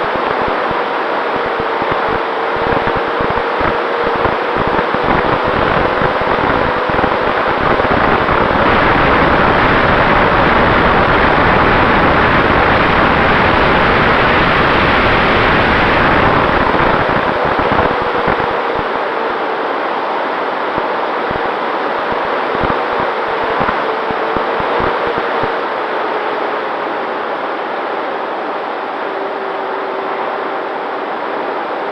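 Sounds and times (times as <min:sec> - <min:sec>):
electric motor whine: 0:00.0 - 0:19.4
airflow rushing: 0:00.0 - 0:31.9.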